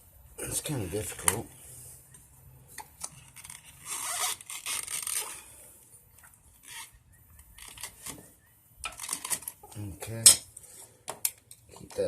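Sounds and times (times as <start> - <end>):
metal parts scraping: 8.8 - 9.7.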